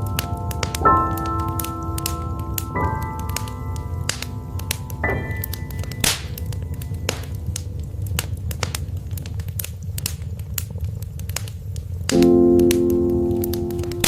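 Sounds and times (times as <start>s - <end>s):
sustained keyboard chord: 0.0s - 9.2s, 12.1s - 14.0s
low rumble: 0.0s - 12.0s
wood fire crackling and popping: 0.0s - 14.0s.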